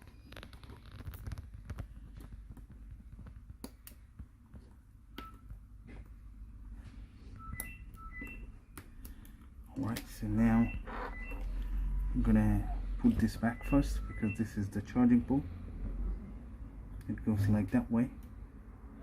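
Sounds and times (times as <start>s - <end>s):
short electronic beeps: 7.4s - 8.6s, 10.4s - 12.0s, 12.7s - 14.8s.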